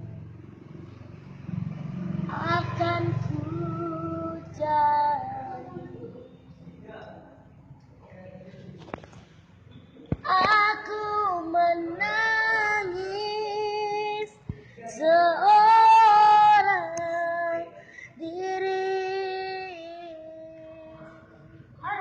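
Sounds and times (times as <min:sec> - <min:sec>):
child singing: 0:10.3 - 0:21.2.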